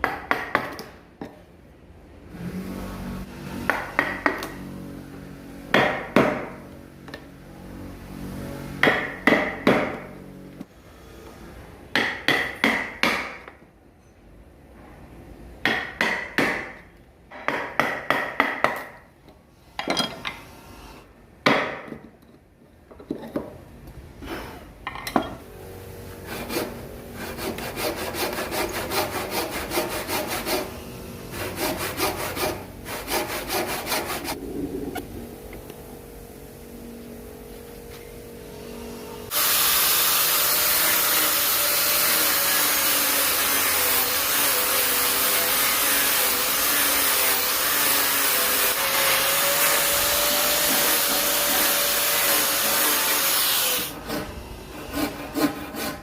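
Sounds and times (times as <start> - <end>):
hand saw cutting wood: 26.1 - 34.4, 39.3 - 56.0
low steady hum: 33.8 - 39.3.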